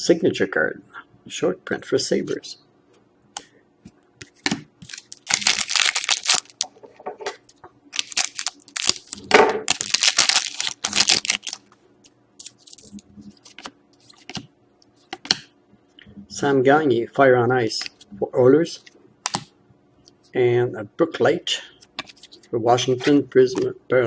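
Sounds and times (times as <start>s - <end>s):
cards and packaging rustling: 4.8s - 6.7s, 8.0s - 11.6s.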